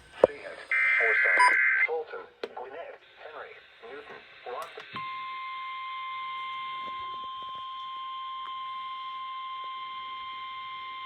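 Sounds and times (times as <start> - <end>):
radio static hiss: 0.0 - 5.0.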